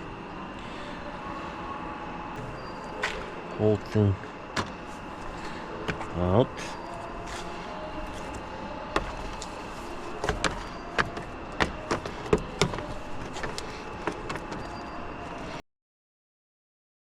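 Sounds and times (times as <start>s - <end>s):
steady background hum: 0.0s - 15.6s
tools and parts clicking: 9.0s - 15.4s.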